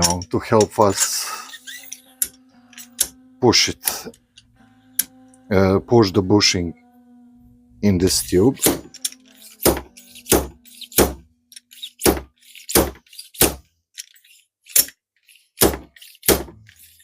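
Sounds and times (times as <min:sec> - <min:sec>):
sharp metallic knocks: 0:08.6 - 0:11.2.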